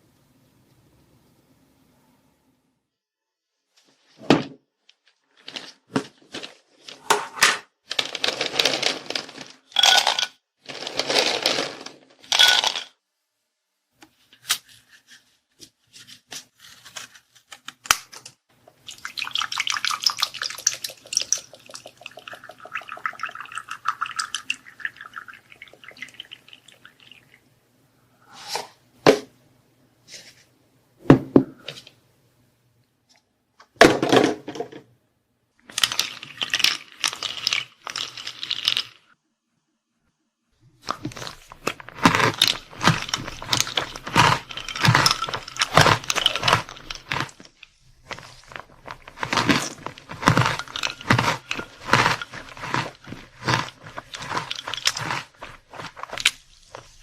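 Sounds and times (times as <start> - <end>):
crunching and rustling: 5.0 - 7.0, 7.9 - 12.8, 40.8 - 57.0.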